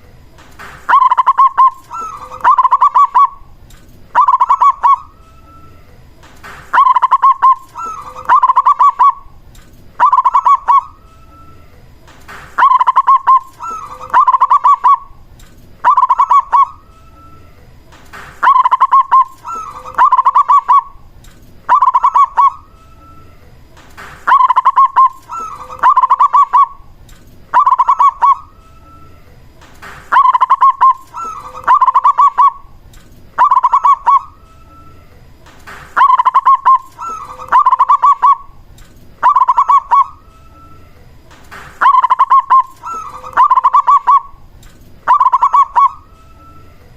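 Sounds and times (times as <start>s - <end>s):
dove cooing: 0.9s - 3.5s, 4.1s - 5.1s, 6.7s - 9.4s, 10.0s - 11.0s, 12.6s - 15.2s, 15.8s - 16.8s, 18.4s - 21.0s, 21.7s - 22.7s, 24.3s - 26.9s, 27.5s - 29.0s, 30.1s - 32.8s, 33.4s - 34.9s, 36.0s - 38.6s, 39.2s - 40.3s, 41.8s - 44.4s, 45.1s - 46.6s.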